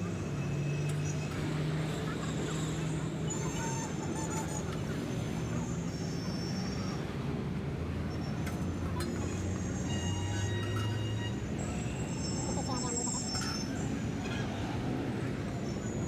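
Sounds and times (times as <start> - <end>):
high honk-like tones: 9.7 - 12.4.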